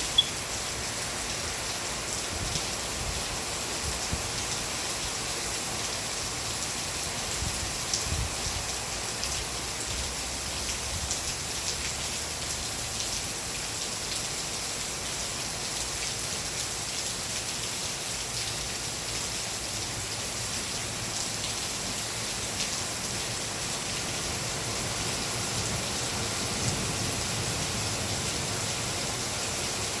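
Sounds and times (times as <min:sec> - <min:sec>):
steady rainfall: 0:00.0 - 0:30.0
raindrop ticks: 0:00.1 - 0:00.4.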